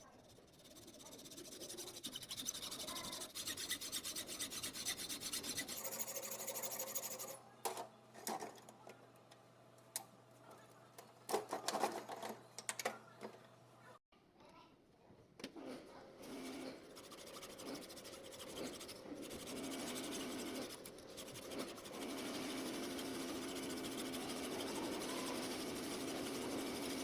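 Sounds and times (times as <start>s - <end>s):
scrap metal rasping scrape: 0.0s - 7.4s, 16.4s - 23.0s.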